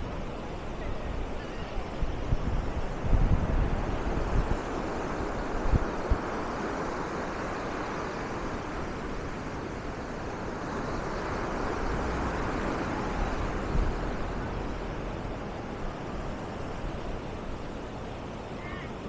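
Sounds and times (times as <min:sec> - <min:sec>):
surf washing up beach: 0:00.0 - 0:19.0
wind buffeting microphone: 0:00.0 - 0:19.0.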